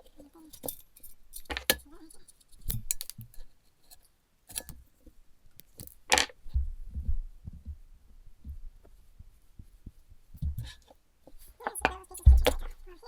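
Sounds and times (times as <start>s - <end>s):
metallic clatter: 0.4s - 3.4s
tools clicking and knocking: 0.5s - 1.9s, 2.6s - 4.8s, 5.6s - 6.4s, 11.6s - 12.8s
low dull thumps: 6.5s - 10.8s.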